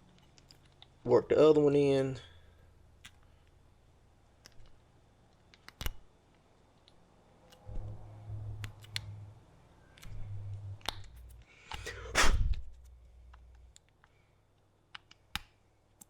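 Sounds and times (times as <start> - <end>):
small clicks: 4.4 - 7.7.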